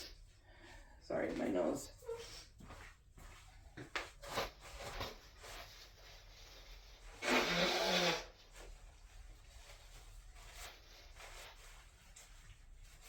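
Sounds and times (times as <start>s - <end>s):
person blowing nose: 7.1s - 8.5s.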